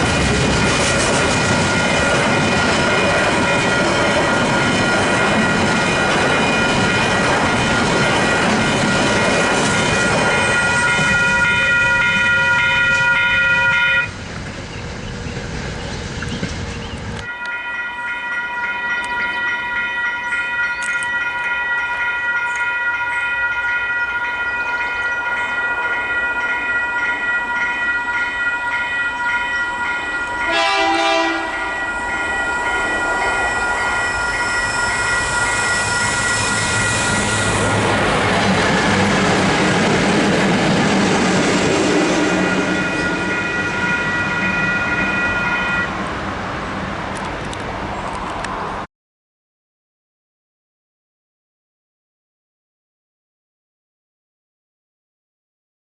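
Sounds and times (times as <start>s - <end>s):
train rumble: 0.0s - 48.9s
level crossing bells ringing: 1.2s - 14.1s, 17.3s - 37.1s, 42.3s - 45.9s
train horn: 9.9s - 14.1s, 30.2s - 39.2s, 41.9s - 45.9s.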